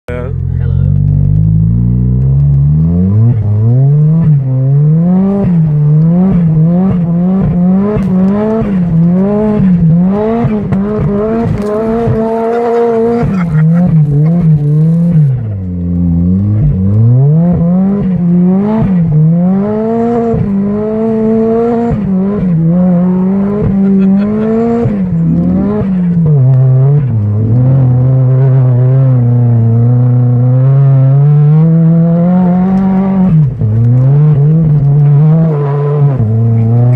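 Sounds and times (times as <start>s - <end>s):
car engine revving hard: 0.5s - 36.9s.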